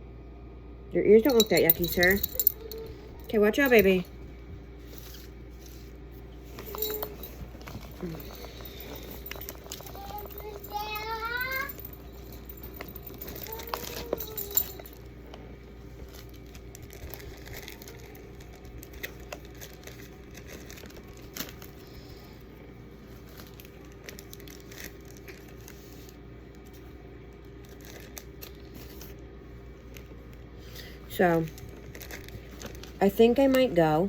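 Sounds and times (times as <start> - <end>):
faint hum: 0.0 - 34.0
plastic bags crinkling: 6.6 - 15.0, 16.0 - 22.2, 23.0 - 26.7, 27.4 - 29.2, 31.4 - 33.8.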